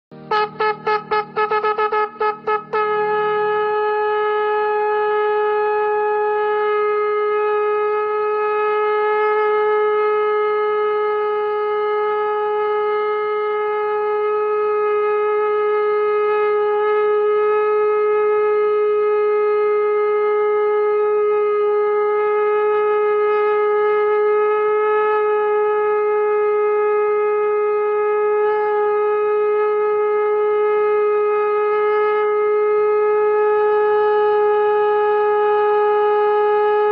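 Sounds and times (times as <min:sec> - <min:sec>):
conch shell blown: 0:00.1 - 0:36.9.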